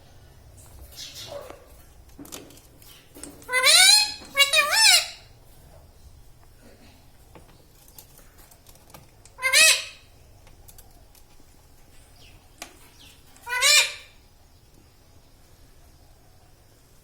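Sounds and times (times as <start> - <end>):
parrot calling: 3.4 - 5.3, 9.4 - 10.1, 13.3 - 14.2.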